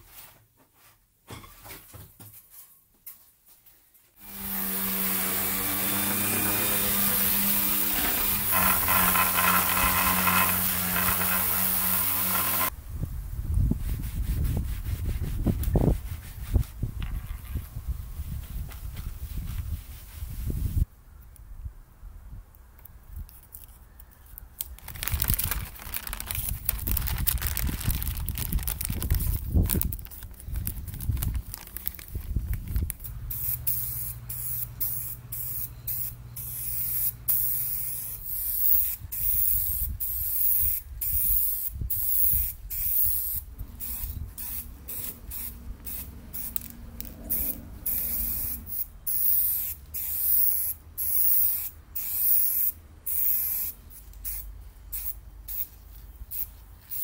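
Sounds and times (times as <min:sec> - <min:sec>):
spray paint hissing bursts: 0:06.5 - 0:12.8, 0:33.2 - 0:57.0.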